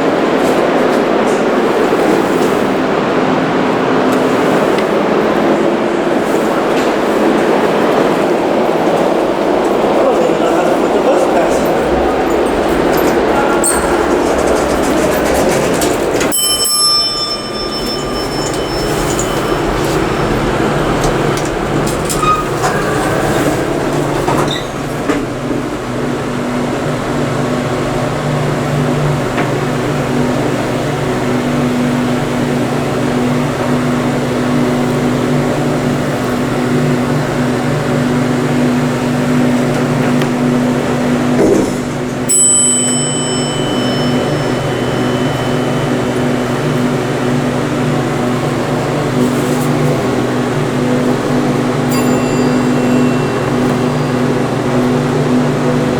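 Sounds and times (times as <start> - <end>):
high ringing chime: 11.9 - 15.2, 16.2 - 21.2, 42.3 - 48.5, 51.0 - 55.9.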